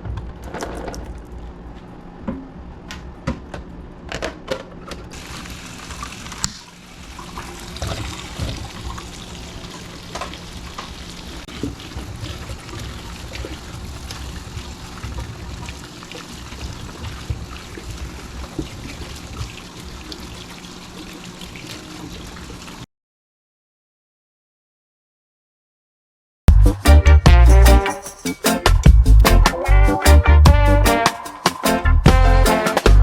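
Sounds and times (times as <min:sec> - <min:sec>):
water trickling: 0:05.2 - 0:22.9.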